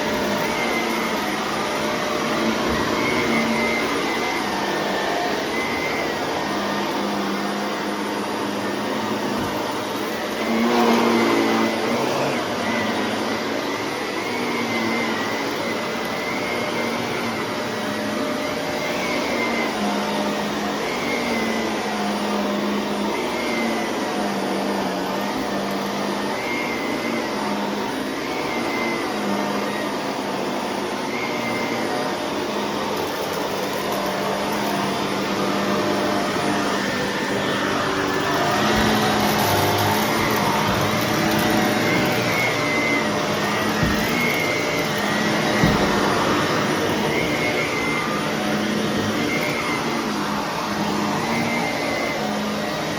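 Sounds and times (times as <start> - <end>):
vacuum cleaner running: 0.0 - 52.9.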